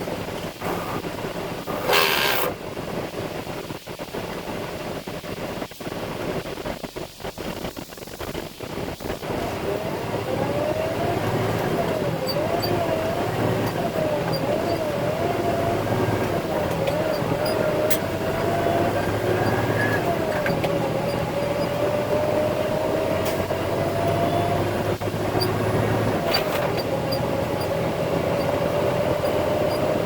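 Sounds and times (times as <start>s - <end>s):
diesel engine running: 0.0s - 3.0s, 9.0s - 30.0s.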